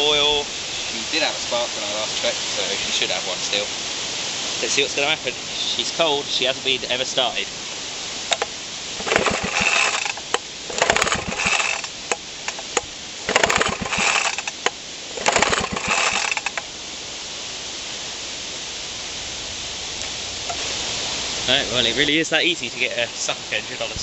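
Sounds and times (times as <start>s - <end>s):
mower engine pull-start: 9.0s - 16.6s.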